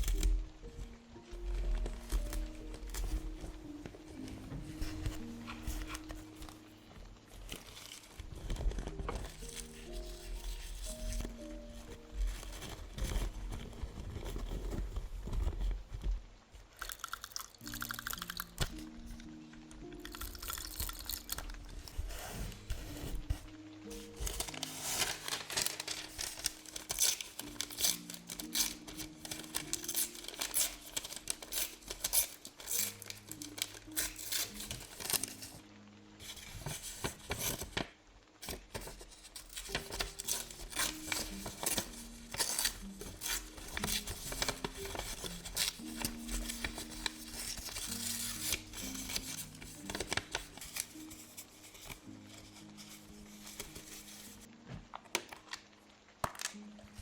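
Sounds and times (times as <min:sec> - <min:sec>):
scissors cutting paper: 0:00.0 - 0:00.4, 0:07.5 - 0:15.6, 0:20.0 - 0:21.6, 0:22.2 - 0:35.6, 0:36.3 - 0:37.8, 0:38.4 - 0:54.4
paper rustling: 0:00.0 - 0:17.0, 0:17.6 - 0:57.0
soft background music: 0:00.0 - 0:57.0.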